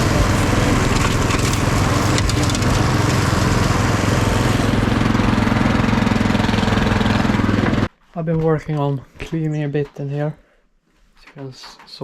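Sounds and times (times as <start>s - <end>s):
small petrol engines running: 0.0s - 7.9s.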